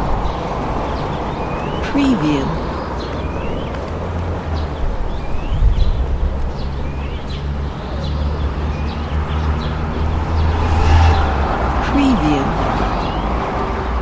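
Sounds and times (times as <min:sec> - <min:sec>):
small birds chirping: 0:00.0 - 0:10.6
low rumble of traffic: 0:00.0 - 0:14.0.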